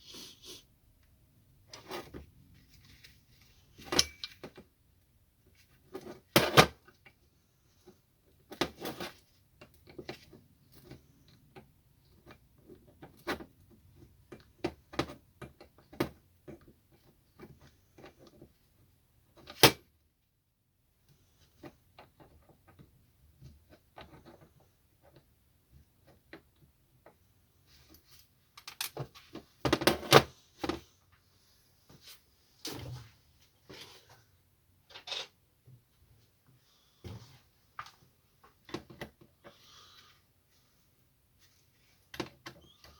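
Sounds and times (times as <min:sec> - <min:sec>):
metal tools handled on workbench: 0:03.8 - 0:04.6, 0:28.6 - 0:30.2, 0:34.9 - 0:35.4.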